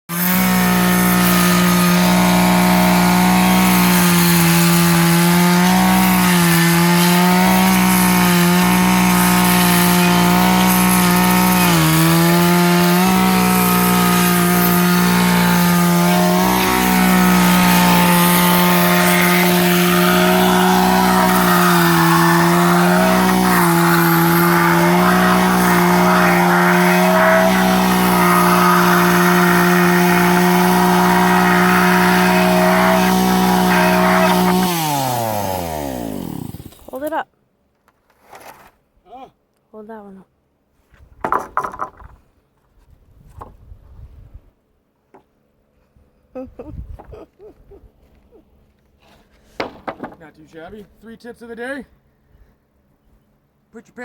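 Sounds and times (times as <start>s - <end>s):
chainsaw cutting log: 0.1s - 37.2s.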